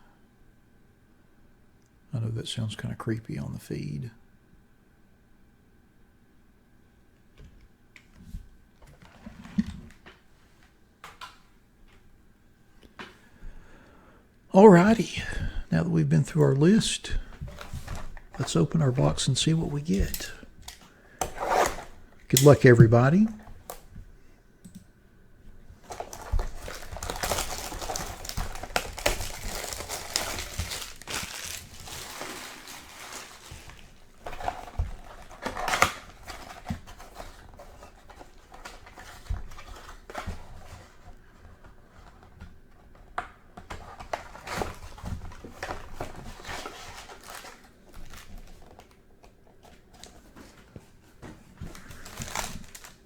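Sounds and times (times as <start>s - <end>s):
foil packs rustling: 14.6s - 23.9s, 25.8s - 42.9s, 43.6s - 53.0s
plastic wrap crinkling and tearing: 16.3s - 23.8s, 25.8s - 40.7s, 43.7s - 49.0s, 51.5s - 53.0s.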